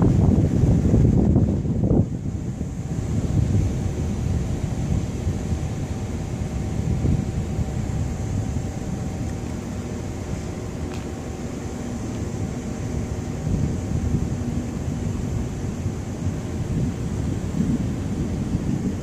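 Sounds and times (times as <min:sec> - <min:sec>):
faint hum: 0:00.0 - 0:19.0
wind rumbling on microphone: 0:00.0 - 0:19.0.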